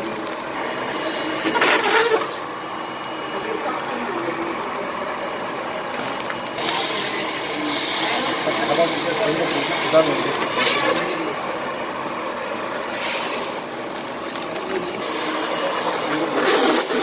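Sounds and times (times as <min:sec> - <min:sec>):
machine humming: 0:00.0 - 0:17.0
burst of hissing: 0:12.8 - 0:14.0.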